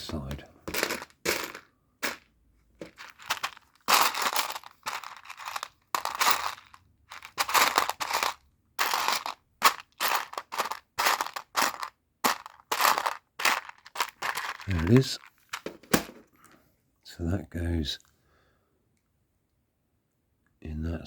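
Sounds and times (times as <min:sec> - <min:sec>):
plastic pieces rattling: 0:00.1 - 0:16.2.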